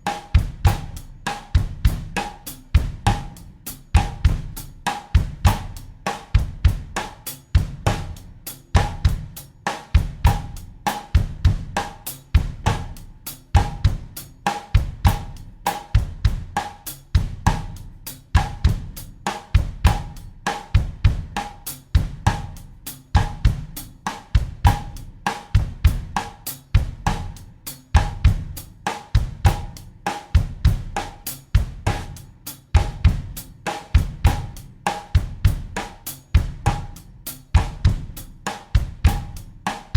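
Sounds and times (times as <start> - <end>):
bass drum: 0.0 - 9.4, 10.0 - 39.9
hi-hat and cymbal: 0.0 - 39.9.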